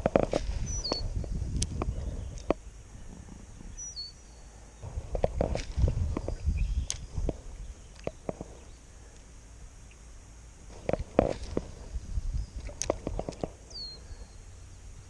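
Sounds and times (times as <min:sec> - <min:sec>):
wind buffeting the microphone: 0:00.0 - 0:04.2, 0:04.8 - 0:08.8, 0:10.7 - 0:14.2.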